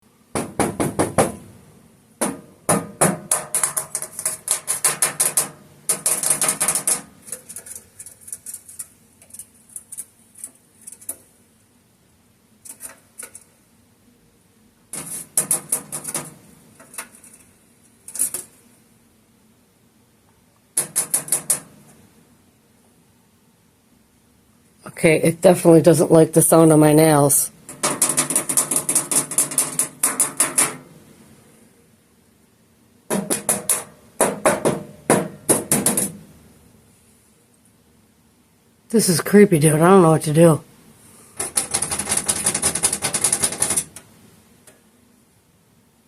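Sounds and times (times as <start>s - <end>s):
fingernails drumming on metal pipe: 27.7s - 30.8s.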